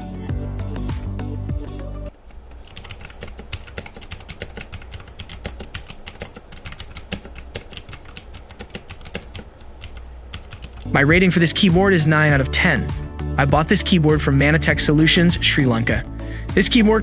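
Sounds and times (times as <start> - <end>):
mechanical keyboard typing clicks: 2.6 - 10.9.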